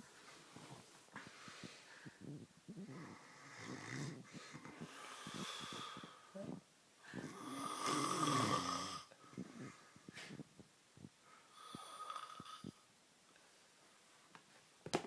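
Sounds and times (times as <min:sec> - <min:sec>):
man snoring heavily: 0:07.2 - 0:09.1.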